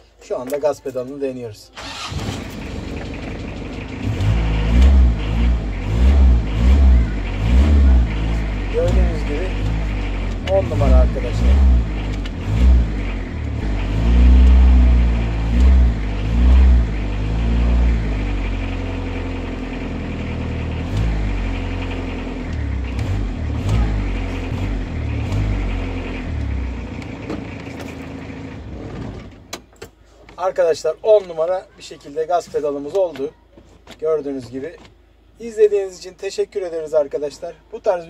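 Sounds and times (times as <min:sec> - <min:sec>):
van diesel engine revving: 0:01.8 - 0:29.6.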